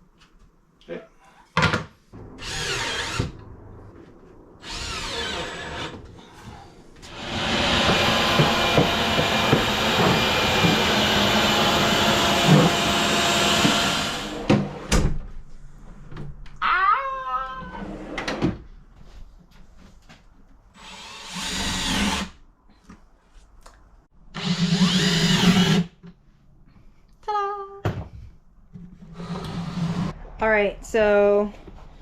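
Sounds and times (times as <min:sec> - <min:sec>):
power drill running: 0:02.4 - 0:03.3, 0:04.6 - 0:05.9, 0:07.1 - 0:14.4, 0:20.8 - 0:22.3, 0:24.4 - 0:25.9.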